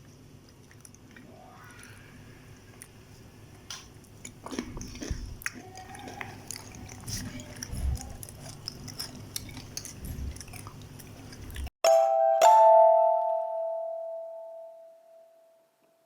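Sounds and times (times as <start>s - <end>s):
chewing and wet mouth clicks: 0.0s - 2.0s, 2.7s - 11.7s
loud two-note chime: 11.9s - 15.6s.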